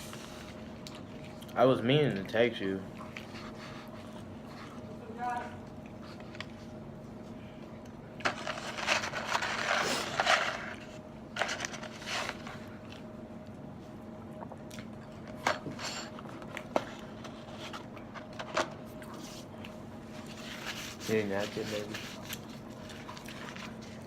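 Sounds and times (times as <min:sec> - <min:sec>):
food packaging rustling: 0:08.2 - 0:13.1.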